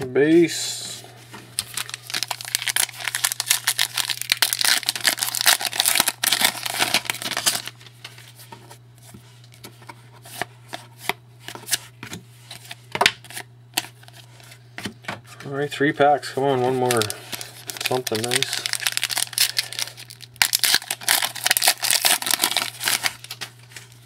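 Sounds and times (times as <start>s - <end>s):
wrapper tearing and crinkling: 1.6s - 7.9s, 16.7s - 24.0s
cards clicking and rustling: 16.7s - 19.8s.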